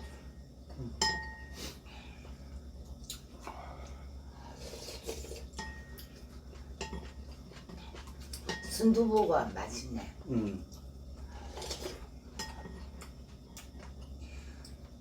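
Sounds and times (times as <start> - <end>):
eating and dish sounds: 0.0 - 15.0
low steady hum: 0.0 - 15.0
cutlery clinking against bowl: 6.8 - 8.8, 12.4 - 12.9.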